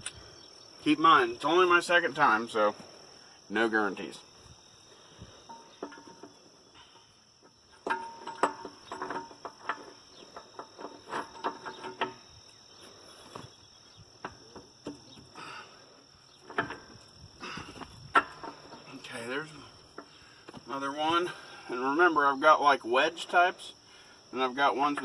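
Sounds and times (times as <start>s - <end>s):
high insect buzz: 0.0s - 7.9s, 8.5s - 22.5s
metal clanks and clinks: 5.4s - 12.5s, 16.4s - 20.2s.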